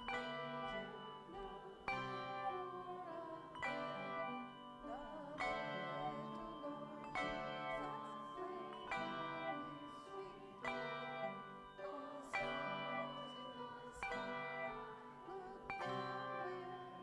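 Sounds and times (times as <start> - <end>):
slow hymn chords: 0.0 - 17.0.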